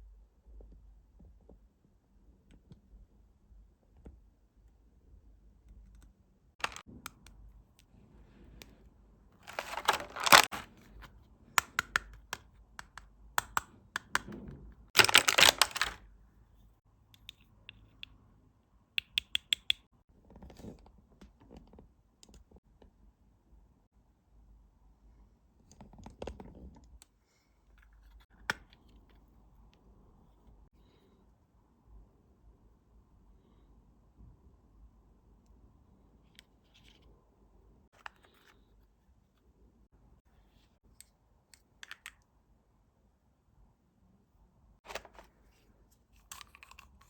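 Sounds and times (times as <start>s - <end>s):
toy rustling: 6.6s - 6.8s, 9.5s - 10.7s, 15.0s - 16.0s.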